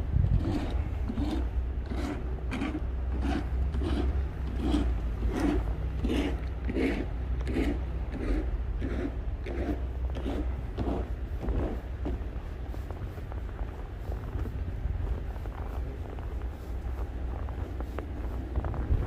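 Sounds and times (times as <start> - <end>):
low rumble: 0.0 - 19.0
footsteps crunching in snow: 10.2 - 19.0.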